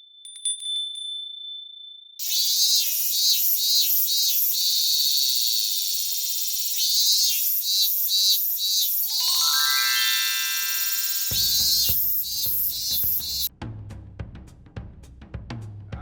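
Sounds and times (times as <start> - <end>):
insects chirping in pulses: 2.2 - 13.5.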